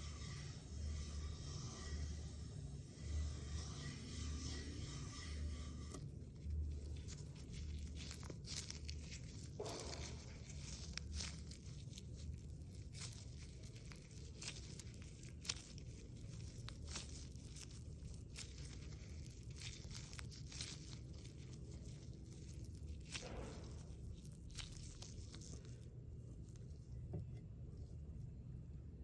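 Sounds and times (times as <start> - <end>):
thick paint scraping: 0.0 - 26.8
low hum: 0.0 - 29.0.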